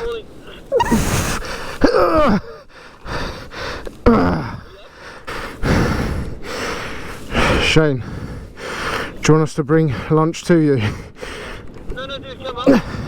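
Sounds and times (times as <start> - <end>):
man gasping and groaning: 0.7 - 9.2, 12.6 - 13.0
wind noise on microphone: 5.4 - 9.2.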